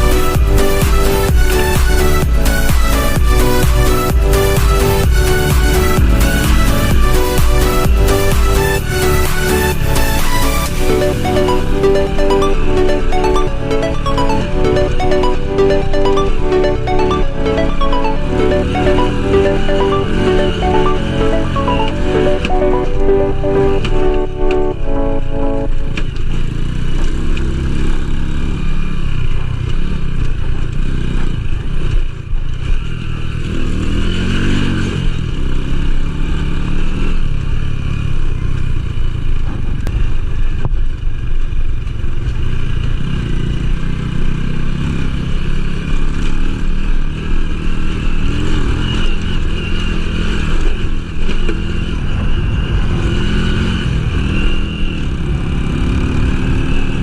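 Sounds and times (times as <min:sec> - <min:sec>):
small motorcycle engine revving: 0:42.5 - 0:57.0.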